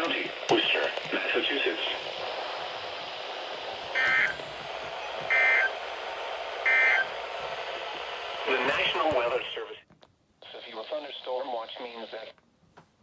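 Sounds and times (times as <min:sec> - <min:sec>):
radio hiss: 0:00.0 - 0:12.4
shrill electronic data bursts: 0:03.8 - 0:08.6.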